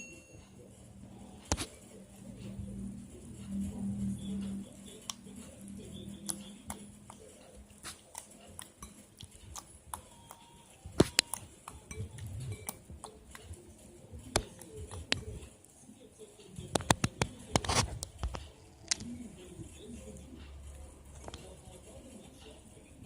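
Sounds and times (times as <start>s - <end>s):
utensils and containers clinking: 6.2s - 15.6s.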